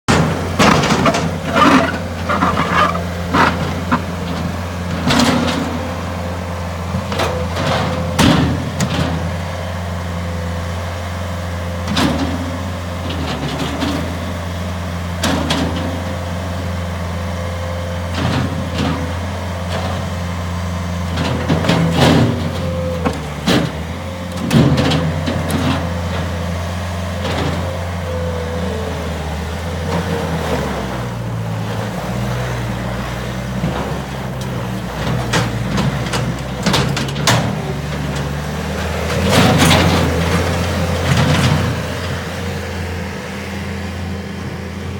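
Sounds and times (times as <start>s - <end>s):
diesel engine running steadily: 0.0s - 44.9s
sharp knocks and clanks: 0.1s - 4.4s, 35.0s - 41.9s.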